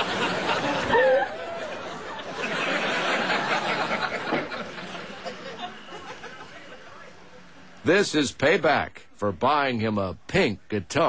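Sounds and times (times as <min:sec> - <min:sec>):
audience laughing: 0:00.0 - 0:07.0.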